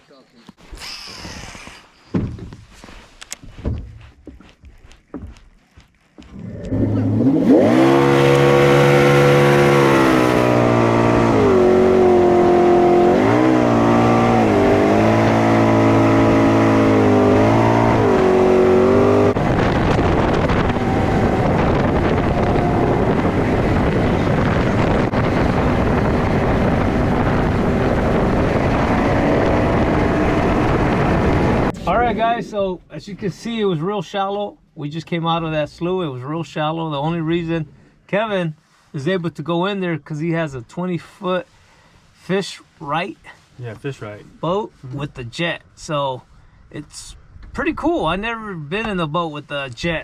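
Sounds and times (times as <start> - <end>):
boat engine revving: 6.3 - 32.9
water rushing: 6.7 - 32.4.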